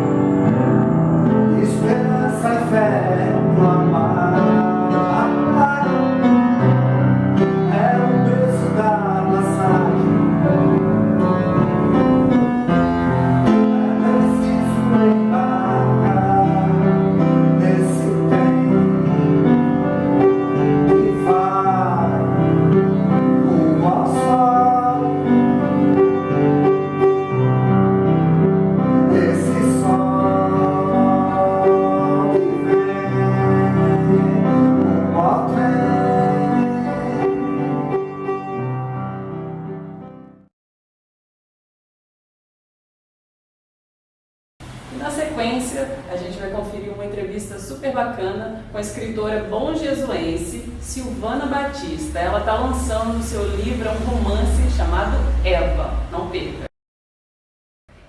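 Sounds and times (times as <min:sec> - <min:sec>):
piano accompaniment: 0:00.0 - 0:40.5, 0:44.6 - 0:56.7
person singing: 0:01.3 - 0:06.6, 0:07.4 - 0:10.8, 0:12.7 - 0:19.0, 0:20.8 - 0:26.0, 0:29.1 - 0:38.1.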